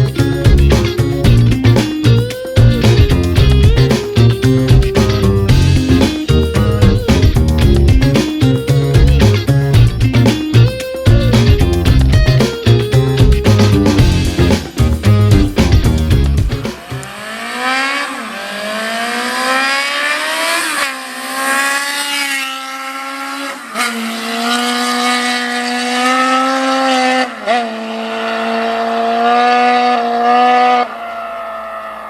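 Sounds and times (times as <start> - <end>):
engine exhaust through gears: 0.0 - 8.2.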